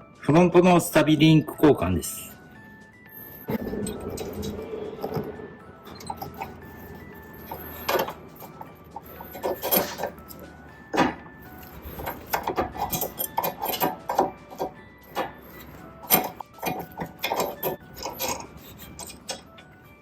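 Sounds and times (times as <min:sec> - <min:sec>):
tools clinking on metal: 0:05.9 - 0:19.8.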